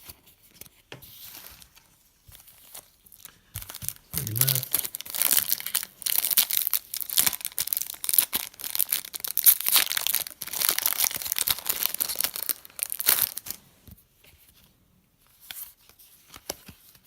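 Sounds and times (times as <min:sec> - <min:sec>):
card wrappers torn and crinkled: 0:02.7 - 0:13.6.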